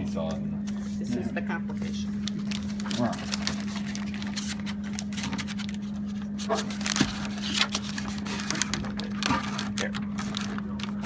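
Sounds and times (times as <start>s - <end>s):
vending machine hum: 0.0s - 11.0s.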